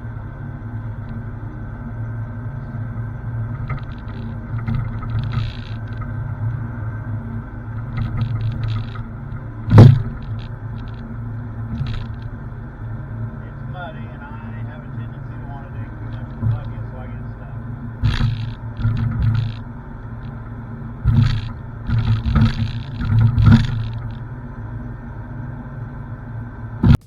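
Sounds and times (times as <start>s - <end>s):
digging machine engine running: 0.0s - 27.0s
clanking and scraping: 3.4s - 6.6s, 7.6s - 12.4s, 18.0s - 24.3s.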